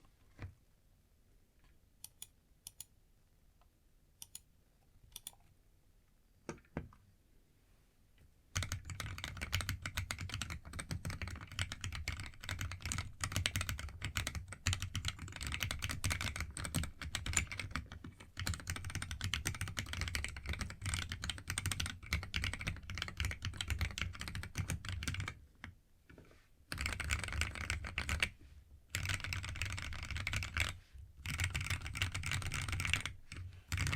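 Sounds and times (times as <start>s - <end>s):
mechanical keyboard typing: 8.6s - 25.4s, 26.7s - 28.3s, 28.9s - 33.9s.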